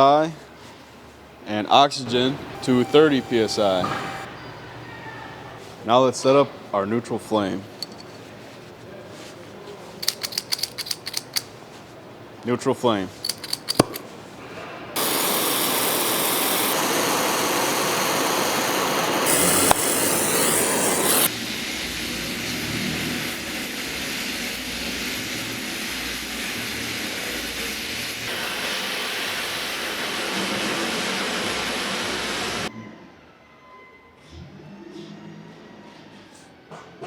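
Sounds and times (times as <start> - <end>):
gas torch hissing: 2.4 - 4.3, 15.0 - 32.7.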